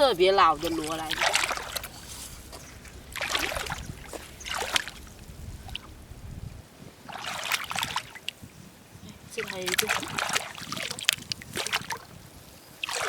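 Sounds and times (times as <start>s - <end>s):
splashing scrapes of wet sand: 0.0s - 6.2s.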